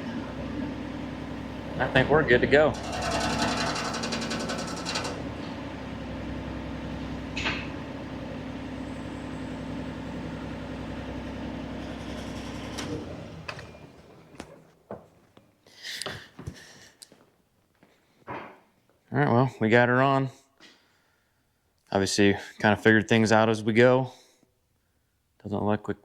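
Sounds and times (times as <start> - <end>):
diesel engine idling: 0.0 - 14.7.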